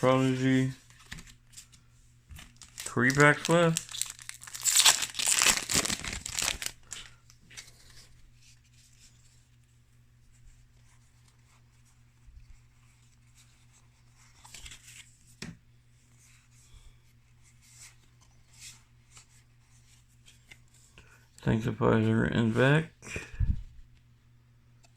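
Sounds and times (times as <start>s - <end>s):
cards rustling and tapping: 0.2s - 8.1s
foil wrapper tearing and crinkling: 2.5s - 7.1s.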